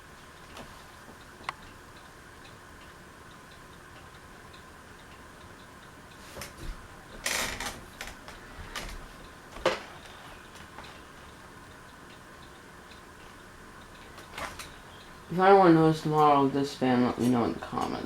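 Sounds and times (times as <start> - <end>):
ceiling fan humming: 0.0 - 18.0
fan ticking: 0.0 - 18.0
rustling and clicks: 14.0 - 14.8.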